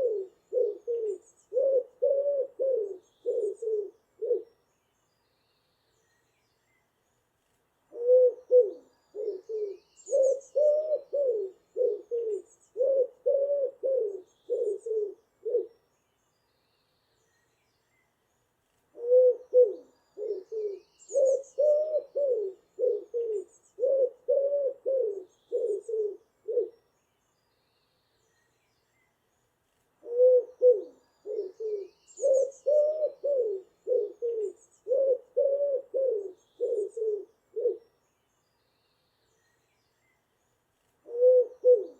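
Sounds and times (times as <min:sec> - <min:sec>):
pigeon cooing: 0:00.0 - 0:04.5, 0:07.9 - 0:15.7, 0:19.0 - 0:26.7, 0:30.0 - 0:37.8, 0:41.0 - 0:41.9.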